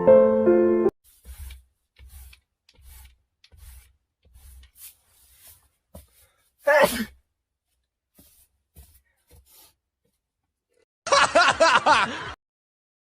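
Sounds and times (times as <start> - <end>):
people laughing: 11.1 - 12.4.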